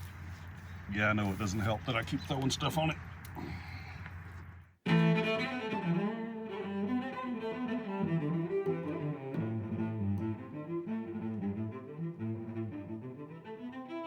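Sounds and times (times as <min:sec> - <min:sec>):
bowed cello notes: 0:04.8 - 0:14.0.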